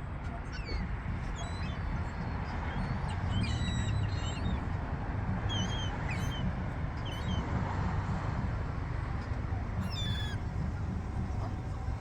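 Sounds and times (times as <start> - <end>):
seagulls calling: 9.9 - 10.5.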